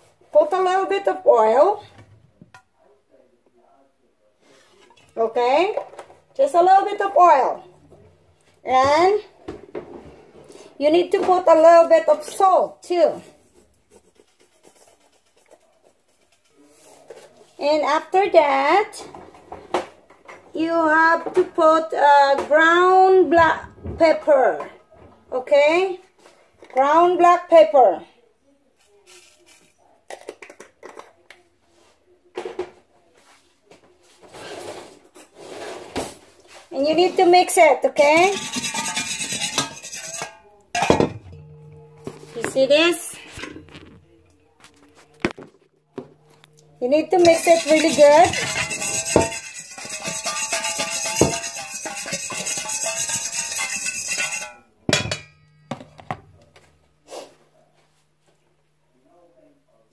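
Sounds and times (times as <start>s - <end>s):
utensil scraping a bowl: 13.3s - 17.4s, 36.9s - 45.3s, 46.2s - 57.3s
low steady hum: 38.1s - 59.9s.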